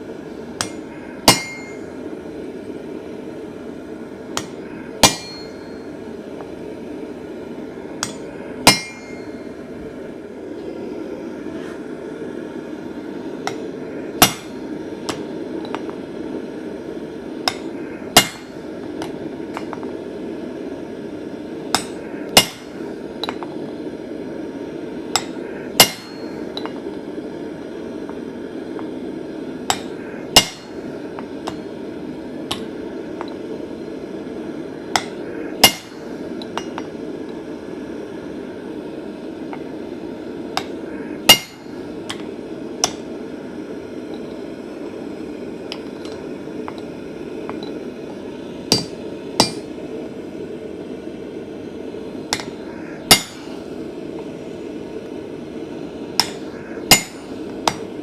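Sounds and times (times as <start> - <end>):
hammer clanging on anvil: 0.6 - 1.9, 4.4 - 5.9, 8.0 - 9.5, 13.5 - 16.0, 17.5 - 19.8, 21.8 - 23.5, 25.2 - 26.8, 29.7 - 30.8, 31.5 - 31.7, 32.5 - 33.4, 35.0 - 36.9, 40.6 - 43.0, 48.7 - 49.8, 52.4 - 53.6, 56.2 - 57.9.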